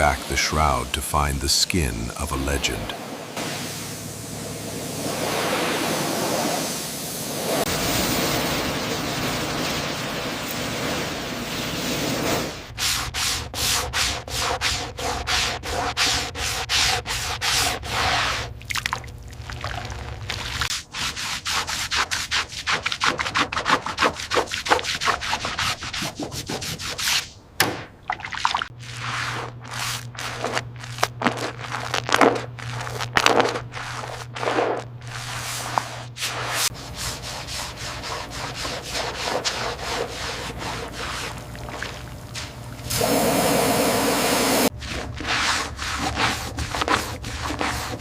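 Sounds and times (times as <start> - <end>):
spray hiss: 3.0 - 12.5, 42.9 - 44.7
scrubbing strokes on car bodywork: 3.4 - 7.9, 9.5 - 18.5, 19.6 - 27.3, 28.8 - 48.0
low steady hum: 28.7 - 48.0.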